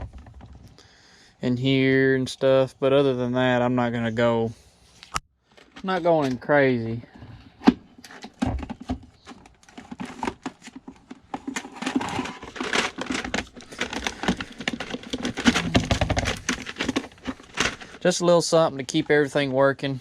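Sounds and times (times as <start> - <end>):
rag rustling: 8.3 - 18.2.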